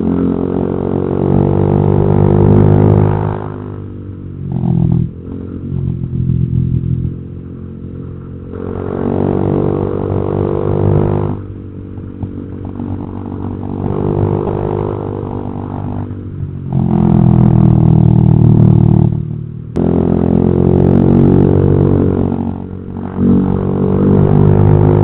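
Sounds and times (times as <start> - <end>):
scooter engine revving: 8.5 - 11.6, 16.7 - 25.0.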